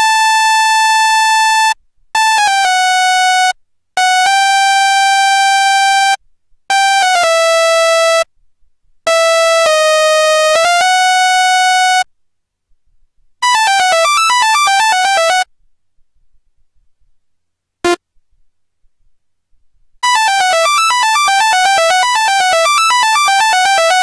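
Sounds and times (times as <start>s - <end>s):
buzzy synthesizer notes: 20.0s - 24.0s.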